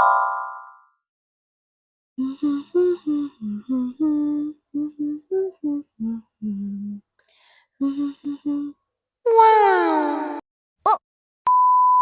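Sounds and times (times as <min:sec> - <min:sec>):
person humming a melody: 0:02.2 - 0:07.0, 0:07.8 - 0:10.4.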